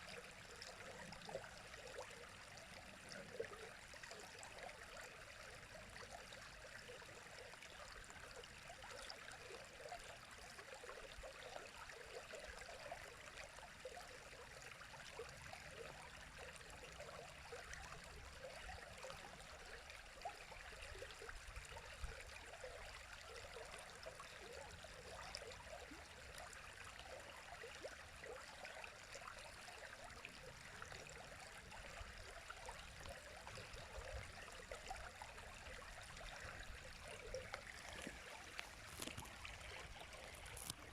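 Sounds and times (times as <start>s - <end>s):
river flowing: 31.6s - 40.9s.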